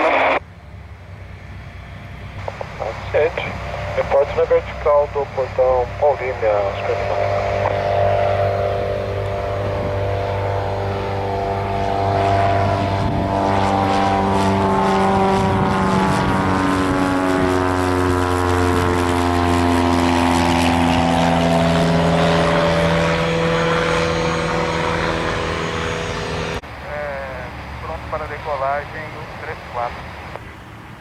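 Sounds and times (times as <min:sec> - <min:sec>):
propeller aircraft engine drone: 0:00.0 - 0:31.0.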